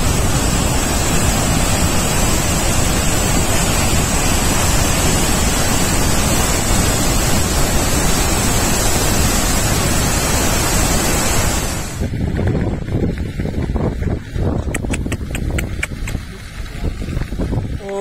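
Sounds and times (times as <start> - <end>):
waterfall roaring: 0.0 - 12.1.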